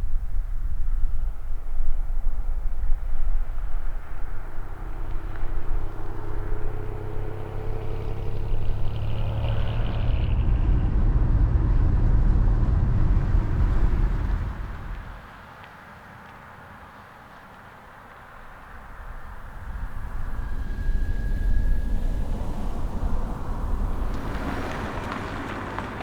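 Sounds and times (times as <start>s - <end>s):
car engine and road noise: 0.0s - 26.0s
faint whine: 18.0s - 24.5s.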